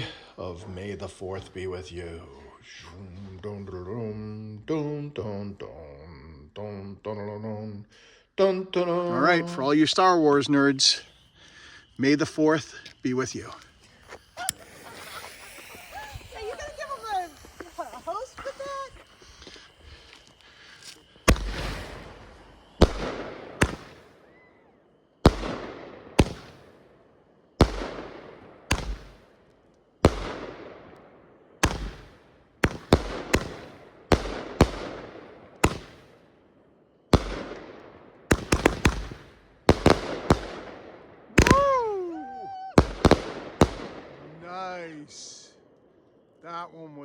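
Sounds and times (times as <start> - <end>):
firework hiss: 9.7 - 29.4, 31.6 - 36.4, 38.3 - 40.8
firework bangs: 9.9 - 29.4, 30.0 - 36.4, 37.1 - 44.5.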